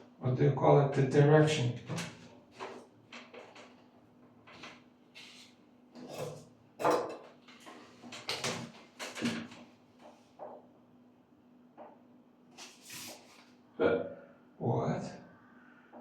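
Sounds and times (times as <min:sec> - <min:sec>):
faint steady hum: 0:08.4 - 0:16.0.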